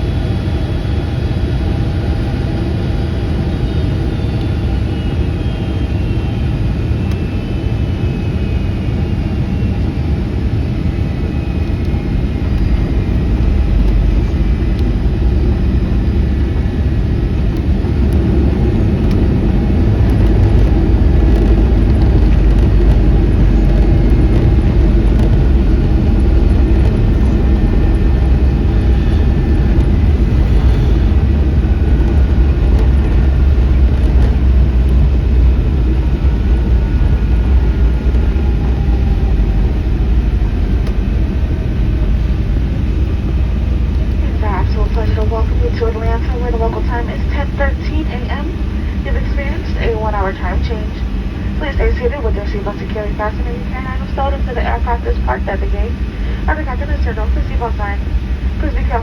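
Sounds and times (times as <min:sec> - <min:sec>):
aircraft engine and airflow rumble: 0:00.0 - 0:59.0.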